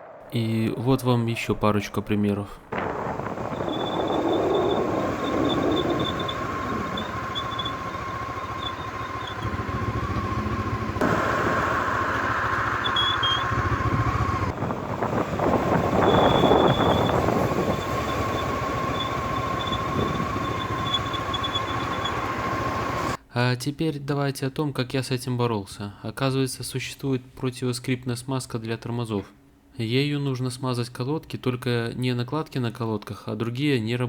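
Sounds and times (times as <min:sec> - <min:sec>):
road and wind noise: 0:00.0 - 0:23.2
motorcycle brake squealing: 0:02.8 - 0:23.2.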